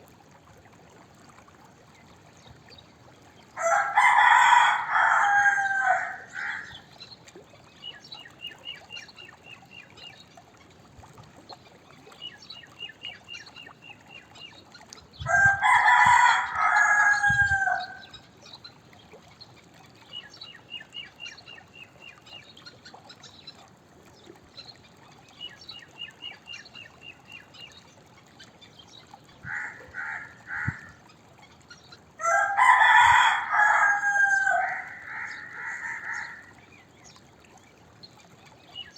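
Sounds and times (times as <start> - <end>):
rooster crowing: 3.6 - 6.8, 15.3 - 18.0, 32.2 - 36.5.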